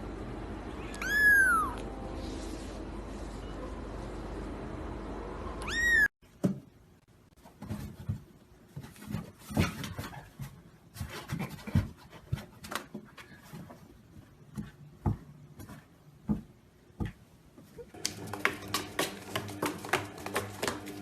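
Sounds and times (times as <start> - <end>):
cat meowing: 0.8 - 1.8, 5.6 - 6.1.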